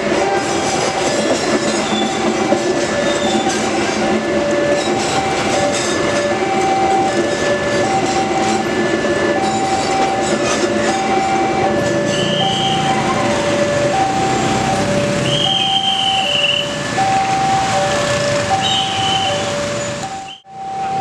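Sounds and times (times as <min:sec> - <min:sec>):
train rumbling past: 0:00.0 - 0:21.0
high squeal: 0:15.2 - 0:17.6, 0:18.6 - 0:20.4.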